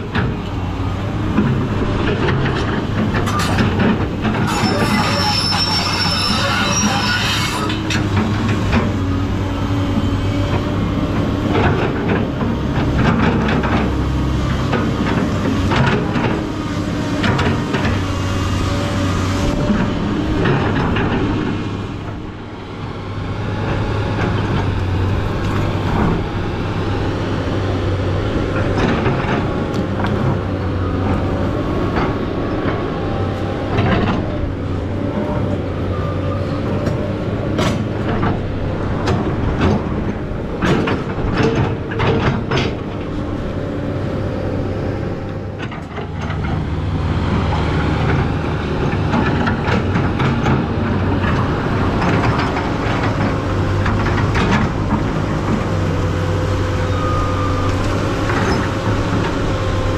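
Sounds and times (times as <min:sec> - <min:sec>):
excavator diesel engine running: 0:00.0 - 0:59.9
hydraulic whine: 0:04.3 - 0:08.2.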